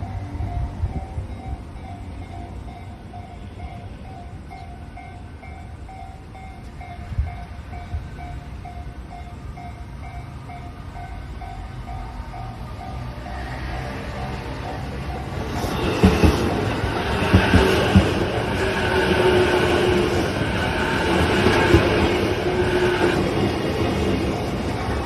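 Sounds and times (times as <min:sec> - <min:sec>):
level crossing warning bell: 0:00.0 - 0:17.2
train rumbling: 0:00.0 - 0:25.0.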